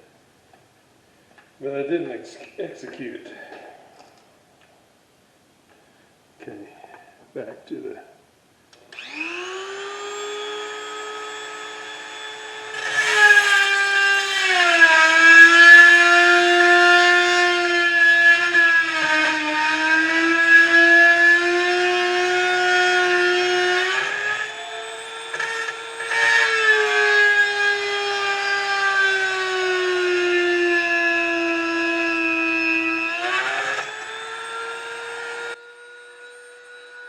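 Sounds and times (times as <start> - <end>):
rotary tool whining: 8.8 - 37.0
rotary tool grinding metal: 8.9 - 37.0.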